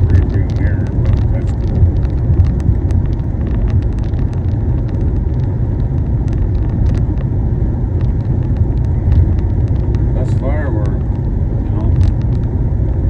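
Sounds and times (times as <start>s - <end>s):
car road and engine rumble: 0.0s - 13.0s.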